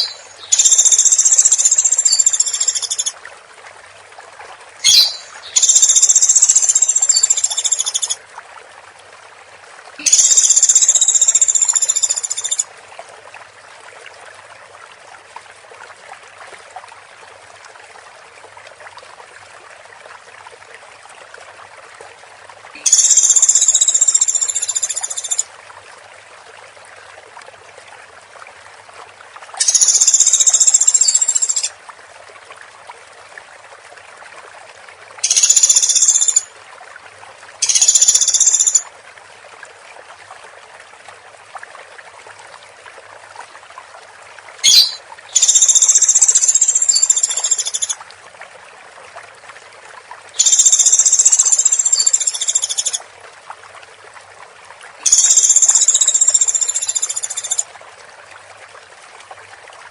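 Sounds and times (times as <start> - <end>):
woodpecker trilling: 4.8 - 6.2, 44.6 - 45.6.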